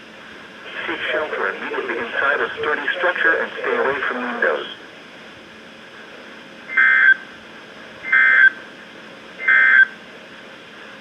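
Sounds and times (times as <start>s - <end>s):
faint radio hiss: 0.0s - 6.7s.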